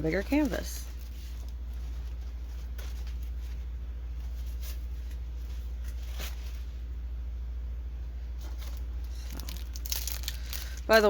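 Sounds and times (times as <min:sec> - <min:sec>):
faint rustles and clicks: 0:00.0 - 0:07.0
steady low hum: 0:00.0 - 0:11.0.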